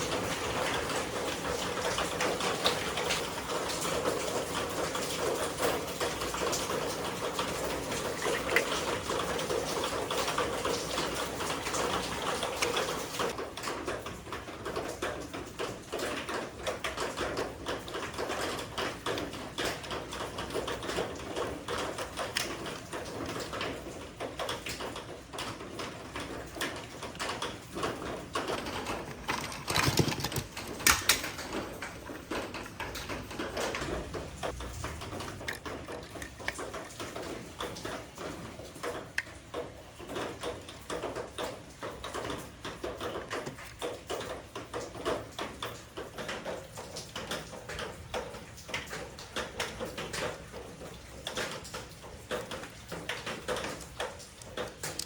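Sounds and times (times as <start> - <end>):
plastic toys clicking and scraping: 0.0 - 13.4, 18.2 - 23.8, 24.4 - 38.1, 42.0 - 44.4, 51.2 - 55.0
plastic clatter: 18.1 - 38.0, 51.2 - 55.0
packaging rustling: 28.2 - 33.4.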